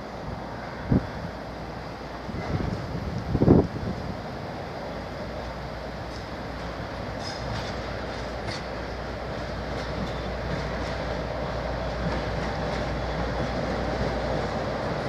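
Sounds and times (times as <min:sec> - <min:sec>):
train rumbling on track: 0:00.0 - 0:15.0.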